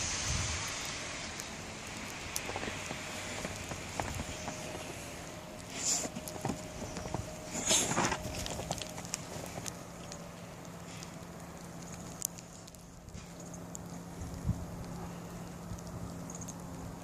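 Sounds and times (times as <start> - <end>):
small crackles: 0.1 - 17.0
footsteps crunching in snow: 2.2 - 10.1.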